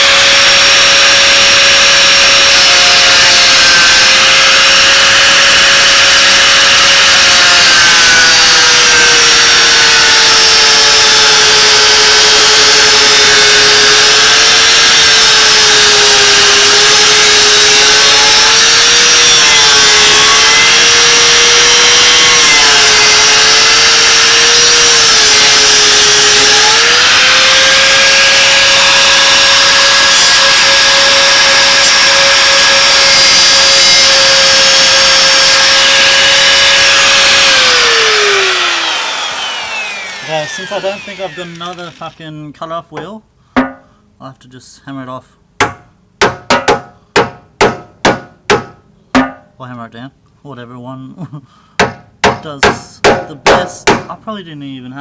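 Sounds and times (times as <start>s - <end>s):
angle grinder cutting metal: 0.0s - 42.3s.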